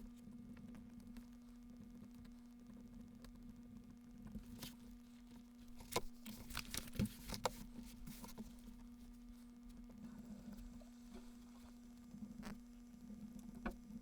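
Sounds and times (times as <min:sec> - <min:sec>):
steady low hum: 0:00.0 - 0:14.0
rustling: 0:04.4 - 0:09.5.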